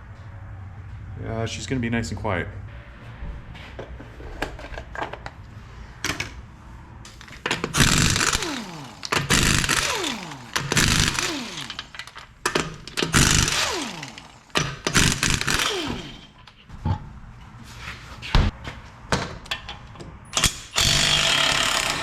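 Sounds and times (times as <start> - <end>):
impact wrench whirring: 7.1 - 16.5, 20.4 - 22.0
tools clicking: 7.1 - 16.6.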